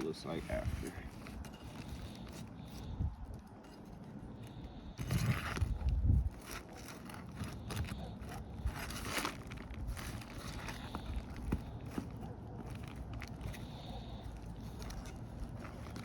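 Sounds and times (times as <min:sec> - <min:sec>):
low rumble of handling: 0:00.0 - 0:16.0
roof shingles scraping and crackling: 0:05.0 - 0:16.0.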